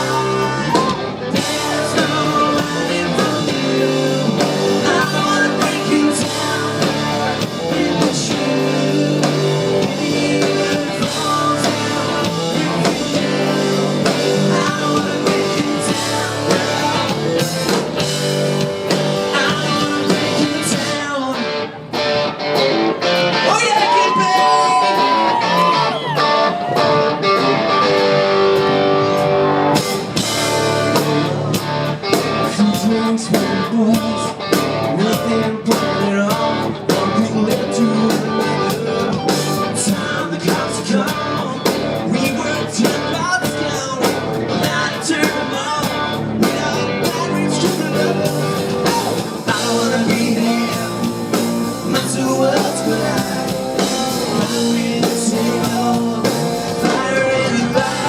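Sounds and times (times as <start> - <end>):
drums and cymbals: 0.0 - 21.2, 23.5 - 58.0
bending electric guitar lead: 0.0 - 58.0
country rock band playing: 0.0 - 58.0.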